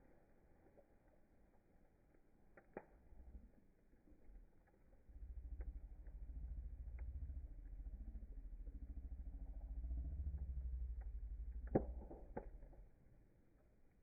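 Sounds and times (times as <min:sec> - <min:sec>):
fire crackling: 0:00.0 - 0:14.0
pulsing low rumble: 0:05.0 - 0:12.9.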